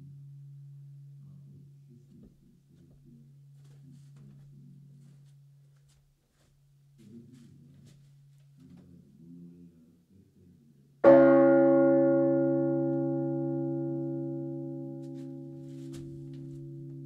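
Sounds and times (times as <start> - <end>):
low bell hum: 0.0 - 3.8, 11.0 - 17.0
large church bell struck: 11.0 - 17.0.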